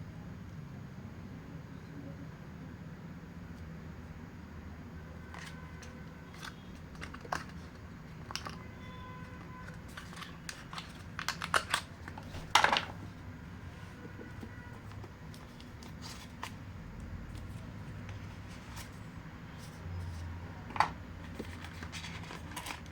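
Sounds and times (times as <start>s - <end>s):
packaging clicks: 5.2s - 8.6s, 9.2s - 13.0s, 20.7s - 22.9s
packaging crinkling: 5.2s - 8.6s, 9.2s - 13.0s, 17.3s - 22.9s.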